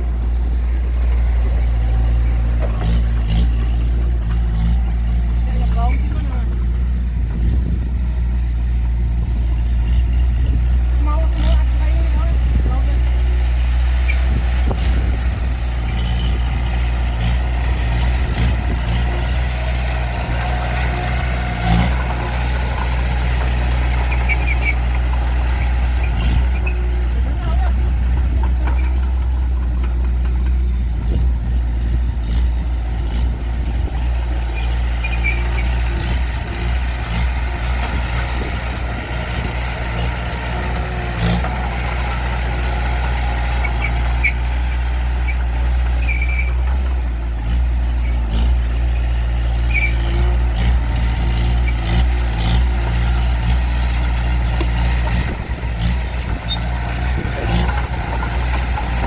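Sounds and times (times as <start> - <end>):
heavy diesel engines running: 0.0 - 59.0
short high squeaks: 0.6 - 2.2, 23.9 - 25.0, 34.5 - 35.8, 42.5 - 44.7, 45.3 - 46.9, 49.6 - 50.5.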